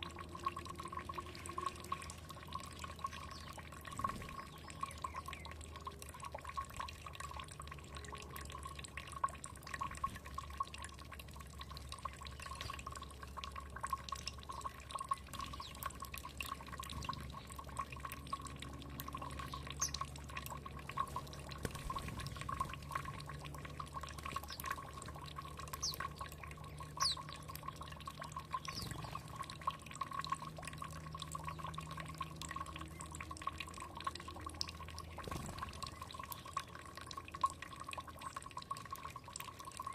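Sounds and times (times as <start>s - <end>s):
water trickling and dripping: 0.0s - 39.9s
faint high bird chirps: 19.4s - 20.0s, 26.8s - 27.4s.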